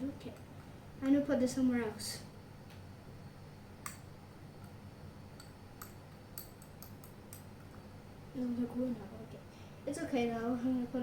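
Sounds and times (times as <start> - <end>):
faint steady hum: 0.0 - 11.0
faint clicks and taps: 0.2 - 1.2, 5.4 - 7.9.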